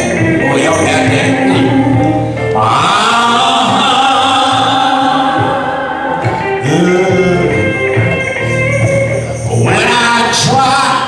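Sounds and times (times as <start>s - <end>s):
backing music: 0.0s - 11.0s
choir and congregation singing: 0.0s - 11.0s.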